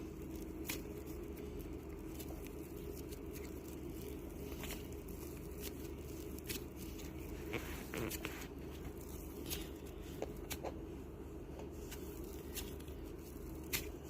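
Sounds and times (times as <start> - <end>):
steady low hum: 0.0 - 14.0
sticky slime clicks and crackles: 11.9 - 14.0.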